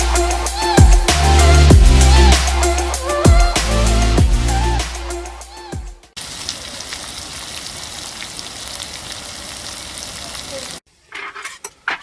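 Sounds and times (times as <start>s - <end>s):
food sizzling in a pan: 6.2s - 10.8s.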